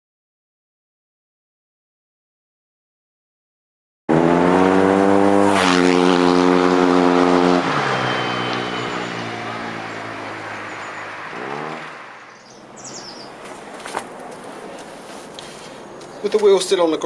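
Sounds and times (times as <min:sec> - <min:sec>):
engine running and revving: 0:04.1 - 0:12.4.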